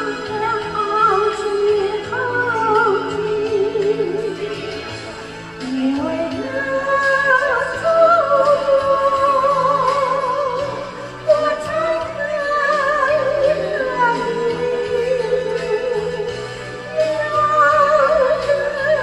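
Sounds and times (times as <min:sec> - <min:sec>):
song with vibrato melody: 0:00.0 - 0:19.0.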